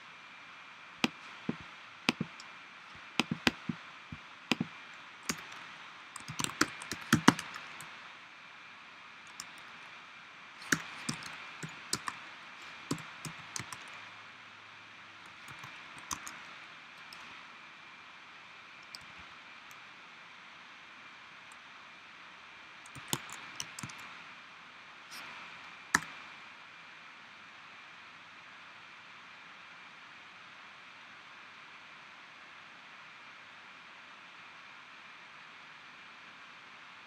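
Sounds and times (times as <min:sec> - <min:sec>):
keyboard typing clicks: 0:01.0 - 0:03.8, 0:04.5 - 0:04.7, 0:05.3 - 0:05.6, 0:06.2 - 0:07.9, 0:09.3 - 0:09.7, 0:10.6 - 0:14.0, 0:15.3 - 0:17.3, 0:22.9 - 0:24.1, 0:25.9 - 0:26.2.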